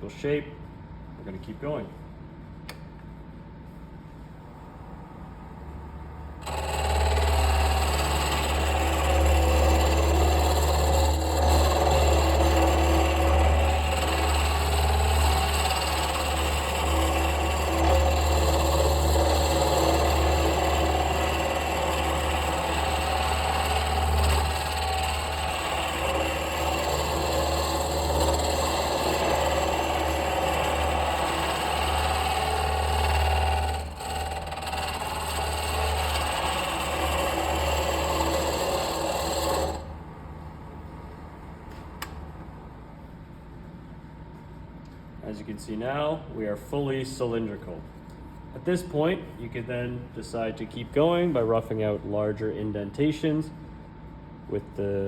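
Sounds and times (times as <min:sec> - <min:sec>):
lathe motor hum: 0:06.0 - 0:40.4
chisel scraping wood: 0:06.4 - 0:40.0.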